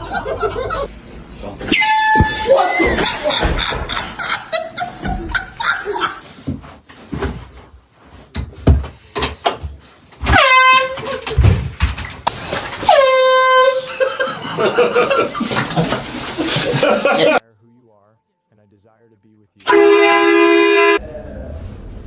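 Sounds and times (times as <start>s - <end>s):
air horn blasts: 10.2s - 11.2s, 12.8s - 14.0s, 19.6s - 21.0s
voices: 16.8s - 21.4s.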